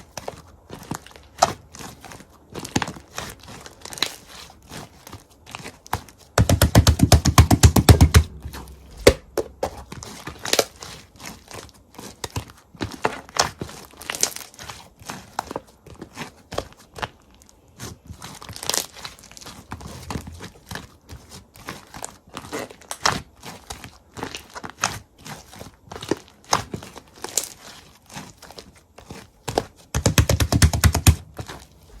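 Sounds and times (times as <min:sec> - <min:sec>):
crisp crunching and crinkling clicks: 0:08.6 - 0:30.1.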